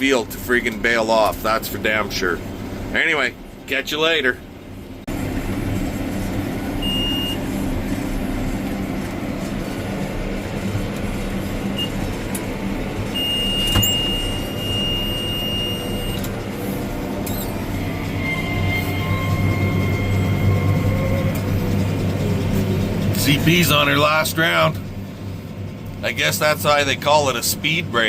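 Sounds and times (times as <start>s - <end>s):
tractor running: 0.0s - 28.0s
thin high whine: 13.1s - 24.7s.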